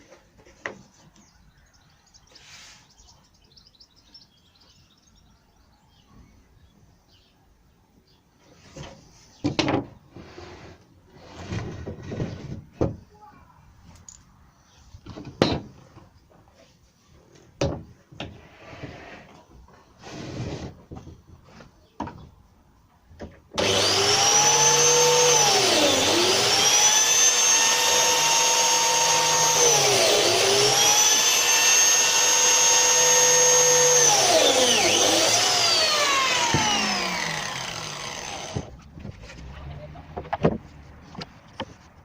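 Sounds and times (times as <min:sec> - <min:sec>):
biscuit jointer motor: 0:23.6 - 0:38.7.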